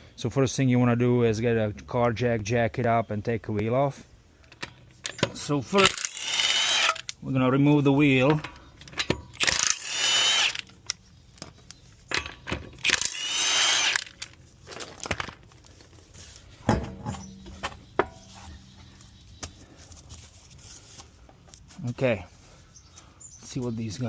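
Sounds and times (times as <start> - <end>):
power tool whining: 5.9 - 7.1, 9.4 - 11.0, 12.8 - 14.4
metallic clicks and knocks: 8.2 - 9.8, 16.6 - 18.8.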